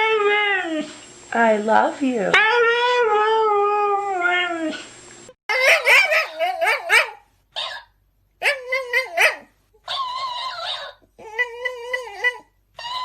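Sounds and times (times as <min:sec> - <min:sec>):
dog howling and yipping: 0:02.4 - 0:04.8, 0:05.5 - 0:13.0.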